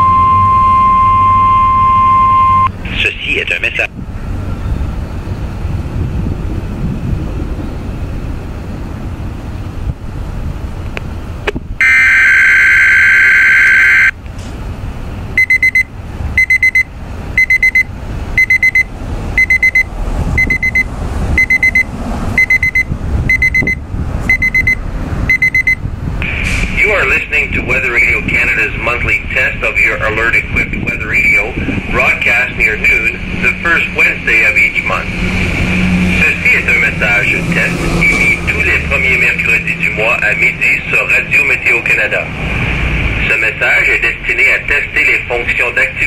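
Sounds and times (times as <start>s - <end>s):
loud electronic alert tone: 0.0s - 2.7s, 11.8s - 14.2s, 36.2s - 40.9s
weather radio double beeps: 0.0s - 3.9s, 11.8s - 14.2s, 15.4s - 26.4s, 38.0s - 41.8s.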